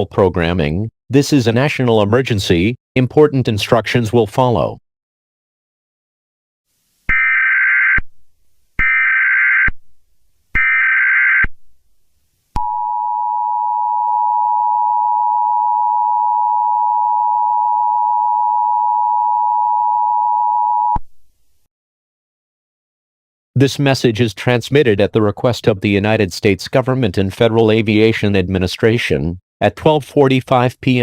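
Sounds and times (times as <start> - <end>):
two-tone alarm: 7.1 - 8.0, 8.8 - 9.7, 10.6 - 11.5, 12.6 - 21.0.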